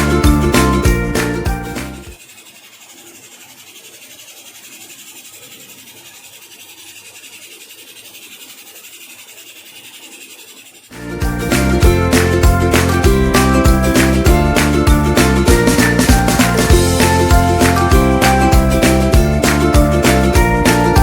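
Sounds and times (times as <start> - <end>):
background music: 0.0 - 2.2, 11.0 - 21.0.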